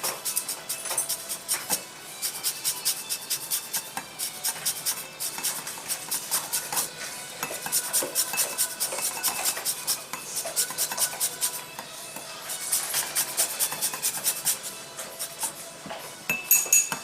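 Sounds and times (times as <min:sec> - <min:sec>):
kitchen utensils clinking: 0:00.0 - 0:01.8, 0:06.6 - 0:11.2, 0:16.2 - 0:17.0
grater rasping: 0:00.0 - 0:11.6, 0:12.5 - 0:15.6.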